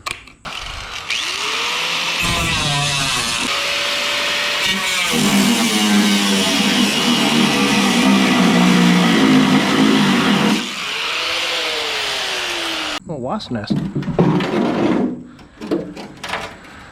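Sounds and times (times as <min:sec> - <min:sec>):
power tool whine: 0:00.5 - 0:13.0.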